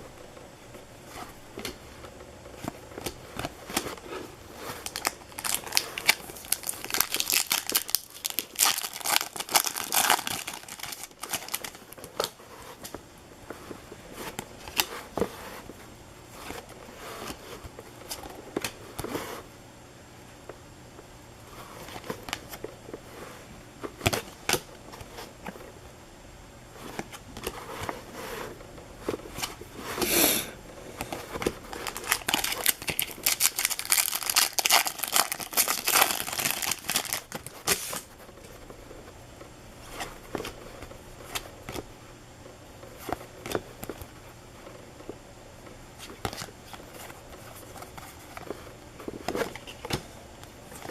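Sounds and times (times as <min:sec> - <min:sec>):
wrappers tearing and crinkling: 0:04.7 - 0:12.4, 0:31.6 - 0:38.1.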